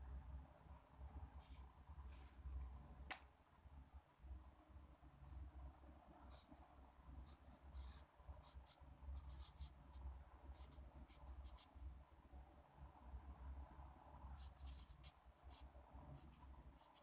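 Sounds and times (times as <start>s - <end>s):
low steady hum: 0.0s - 17.0s
pen scratching on paper: 6.3s - 9.8s, 14.4s - 17.0s.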